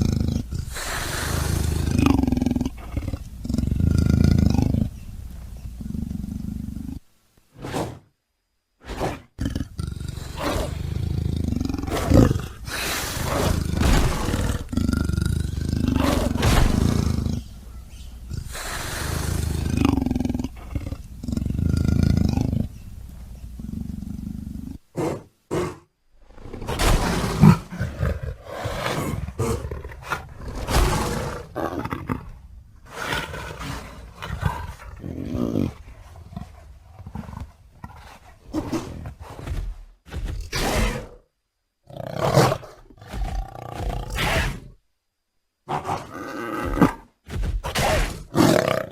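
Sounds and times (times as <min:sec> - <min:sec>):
creature roars and growls: 0:08.9 - 0:22.5, 0:25.0 - 0:32.3.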